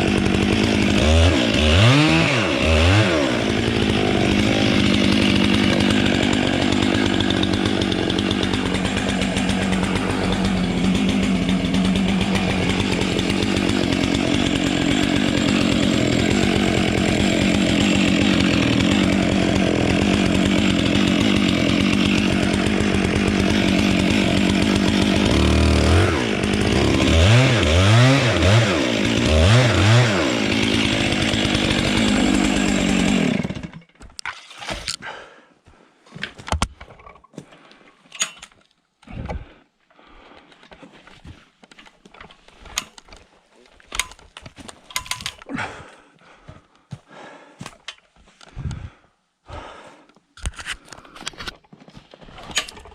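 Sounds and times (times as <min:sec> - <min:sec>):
chainsaw running and revving: 0:00.0 - 0:33.9.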